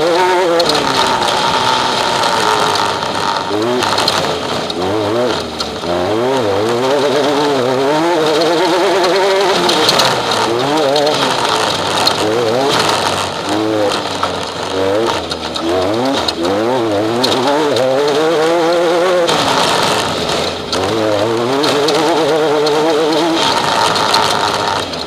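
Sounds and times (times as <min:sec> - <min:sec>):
race vehicle engine revving: 0:00.0 - 0:25.0
rattle and road noise: 0:00.0 - 0:25.0.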